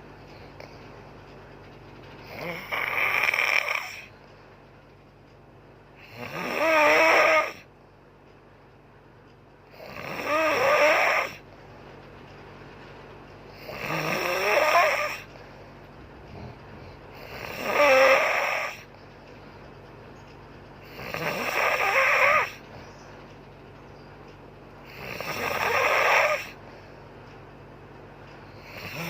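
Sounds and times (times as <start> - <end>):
woman snoring loudly: 2.3 - 4.1, 6.0 - 7.6, 9.8 - 11.4, 13.6 - 15.3, 17.2 - 18.9, 20.9 - 22.6, 24.9 - 26.6, 28.7 - 29.0
quiet breathing: 24.8 - 27.4.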